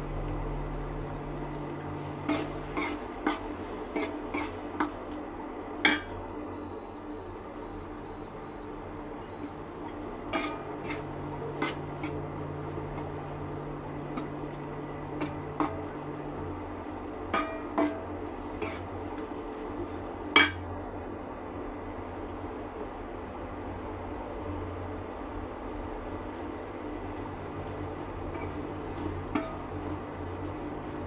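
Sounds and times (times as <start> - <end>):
steady low hum: 0.0 - 31.0
pots and utensils clinking: 5.8 - 6.2, 17.3 - 18.9, 20.4 - 20.6, 29.3 - 29.8.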